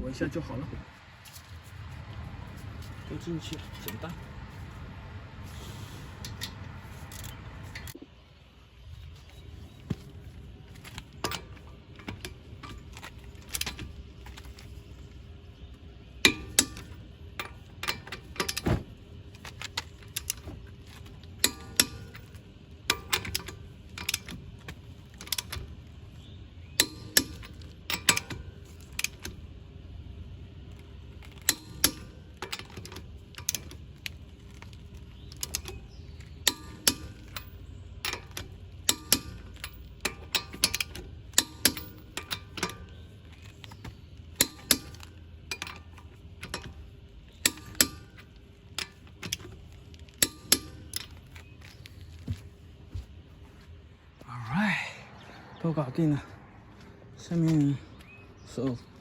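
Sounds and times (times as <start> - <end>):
metallic clicks of hand tools: 31.4 - 33.8, 36.4 - 42.9, 44.4 - 46.8, 47.4 - 49.6, 50.2 - 51.2.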